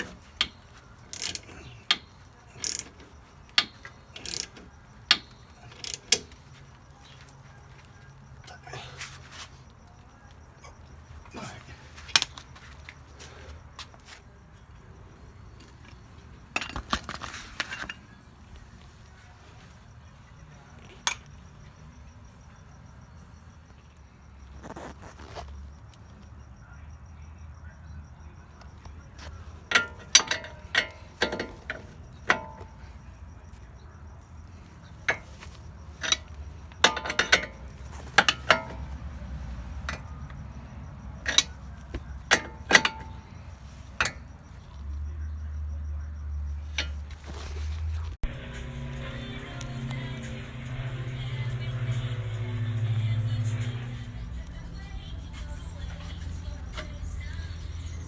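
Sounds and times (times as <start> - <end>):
metal tools clanking: 0.0 - 22.1, 28.6 - 45.6, 46.5 - 48.2
steady low hum: 25.6 - 58.0.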